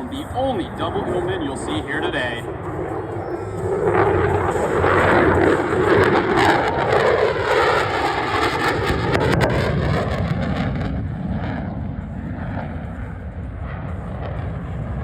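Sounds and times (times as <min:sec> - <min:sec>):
jet engine roar flying past: 0:00.0 - 0:15.0.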